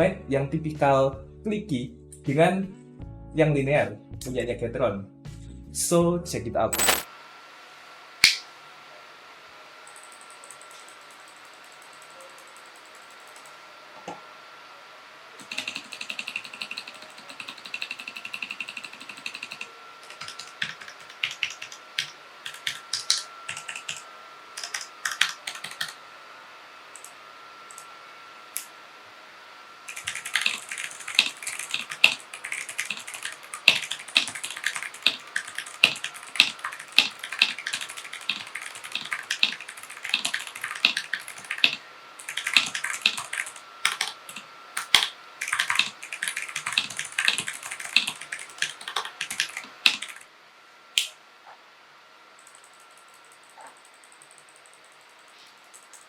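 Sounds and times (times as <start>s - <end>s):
typing on mechanical keyboard: 15.4s - 24.0s, 24.6s - 26.0s, 29.9s - 50.2s.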